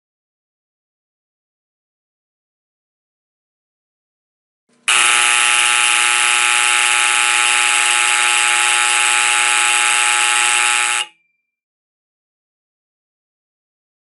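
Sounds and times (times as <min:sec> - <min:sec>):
loud buzzy fire alarm horn: 0:04.8 - 0:11.3.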